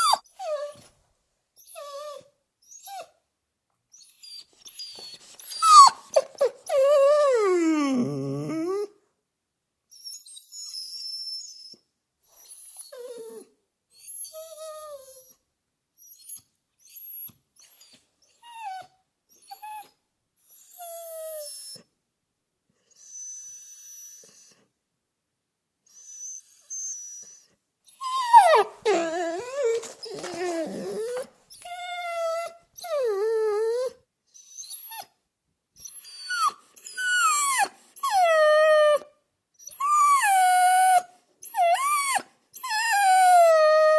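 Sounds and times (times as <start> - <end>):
dog whimpering: 0.0 - 0.8, 4.0 - 9.0, 12.4 - 15.3, 16.0 - 21.9, 26.0 - 35.2, 35.8 - 43.9.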